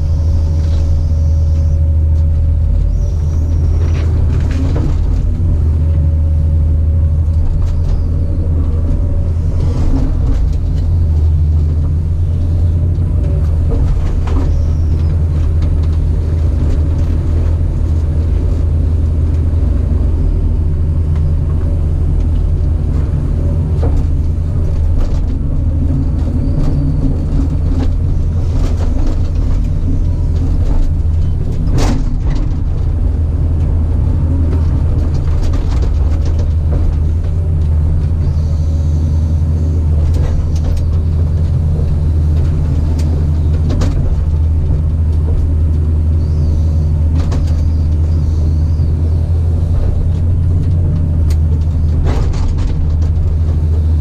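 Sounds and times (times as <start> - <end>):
diesel engine running: 0.0 - 54.0
knocks and clanks: 12.8 - 19.8, 21.1 - 38.4, 39.8 - 46.0, 49.2 - 54.0.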